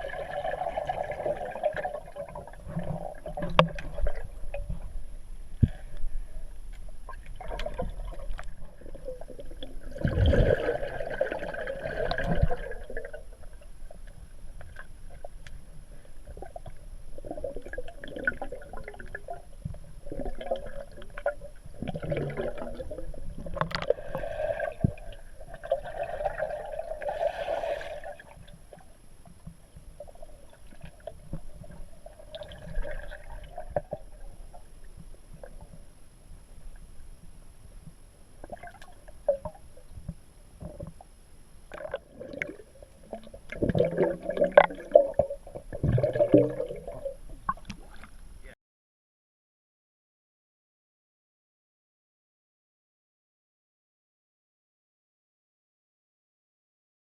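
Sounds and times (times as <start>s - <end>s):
underwater air bubbles gurgling: 0.0s - 28.9s, 29.9s - 35.9s, 41.7s - 48.1s.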